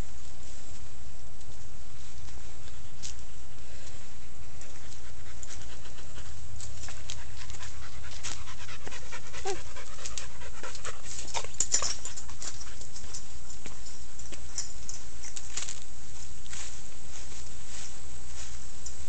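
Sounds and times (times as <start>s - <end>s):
dog panting: 4.2s - 13.4s.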